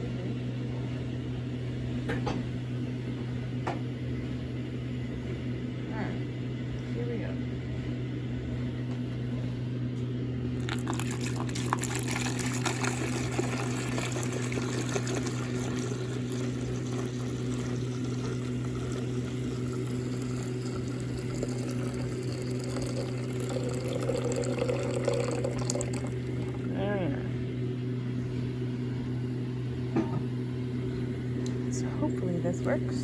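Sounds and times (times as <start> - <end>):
low steady hum: 0.0 - 33.0
hot water pouring into container: 10.6 - 26.7.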